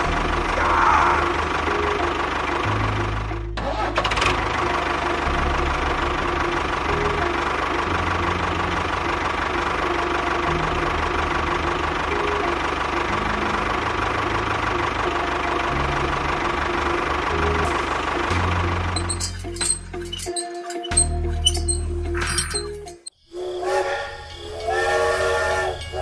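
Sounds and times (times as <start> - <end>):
small engine running: 0.0 - 26.0.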